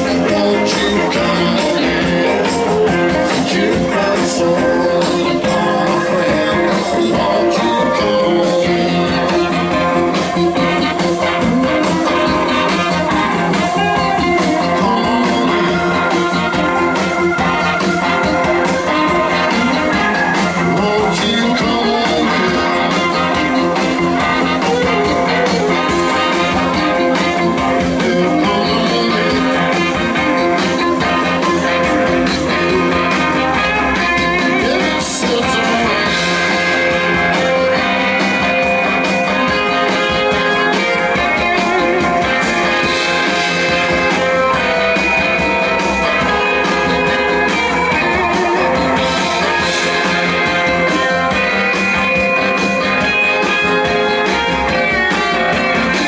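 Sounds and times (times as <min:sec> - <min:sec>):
electric guitar: 0:00.0 - 0:56.0
live blues-rock band: 0:00.0 - 0:56.0.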